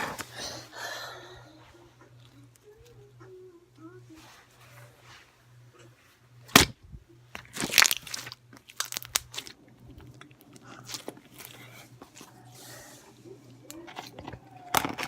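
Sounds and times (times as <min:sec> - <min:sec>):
slime popping and crackling: 0:07.4 - 0:09.6.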